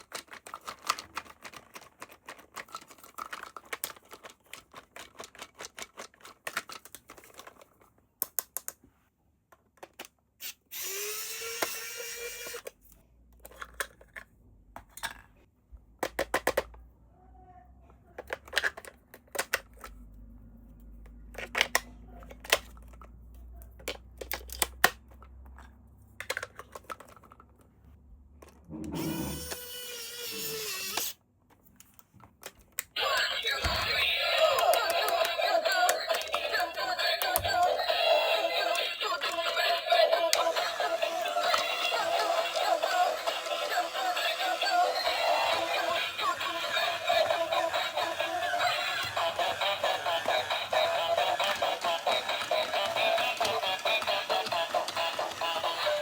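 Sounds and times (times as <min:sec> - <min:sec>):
plastic toy clicks and rattles: 0:00.0 - 0:08.8, 0:16.0 - 0:16.8, 0:18.1 - 0:20.0, 0:21.3 - 0:27.7, 0:32.4 - 0:56.0
small motor hum: 0:10.7 - 0:12.6, 0:29.0 - 0:31.2.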